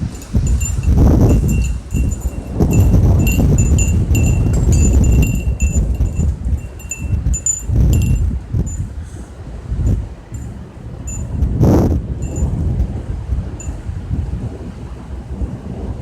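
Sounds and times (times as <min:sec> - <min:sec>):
thunder rumbling: 0:00.0 - 0:08.8
high ringing notes: 0:00.0 - 0:08.9, 0:10.4 - 0:11.5, 0:12.2 - 0:12.6.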